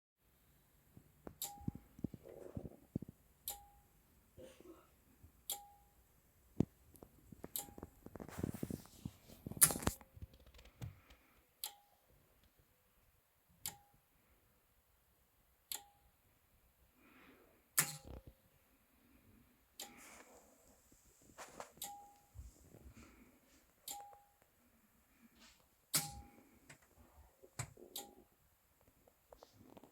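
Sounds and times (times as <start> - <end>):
rustling and knocking: 7.0 - 11.3.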